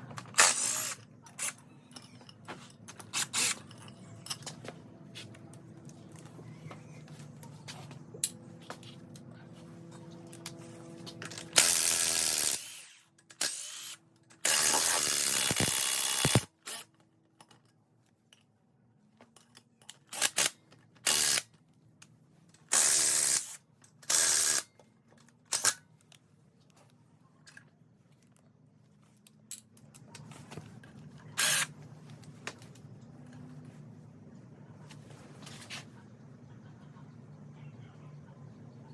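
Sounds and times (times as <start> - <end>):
power tool bursts: 0.3 - 1.0, 11.3 - 16.8.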